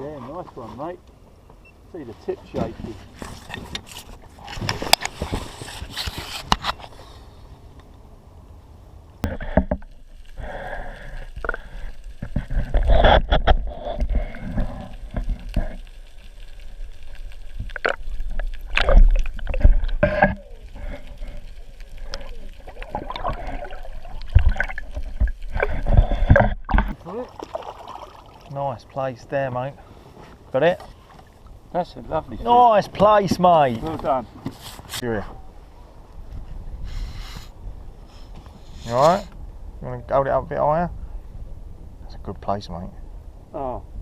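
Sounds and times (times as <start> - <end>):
knocks and scrapes: 2.1 - 7.0, 9.2 - 10.0, 12.2 - 16.2, 17.6 - 27.0, 33.0 - 35.4
water sloshing around boat: 17.8 - 32.4.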